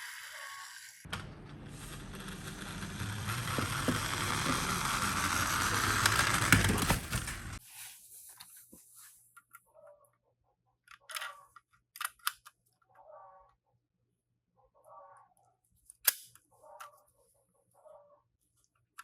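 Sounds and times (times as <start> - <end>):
toy car rolling and rattling: 0.0 - 7.6.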